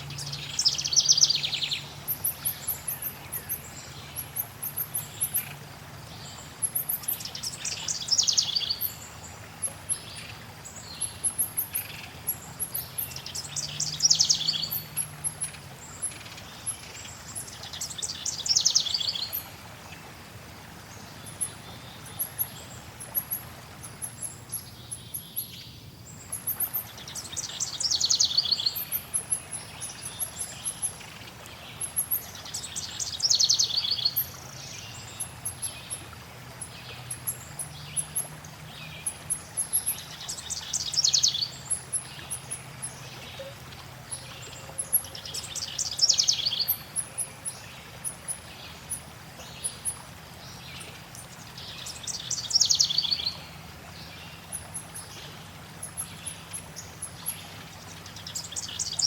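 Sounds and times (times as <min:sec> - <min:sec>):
flowing water rushing: 0:00.0 - 0:59.0
bird trilling song: 0:00.1 - 0:05.6, 0:06.6 - 0:09.0, 0:09.9 - 0:16.8, 0:17.4 - 0:19.5, 0:21.2 - 0:31.0, 0:39.0 - 0:47.6, 0:51.6 - 0:53.4.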